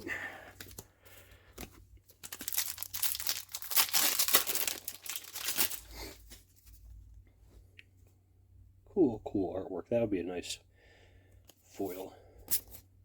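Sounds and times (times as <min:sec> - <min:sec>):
foil wrapper crinkling and tearing: 0:02.1 - 0:06.2.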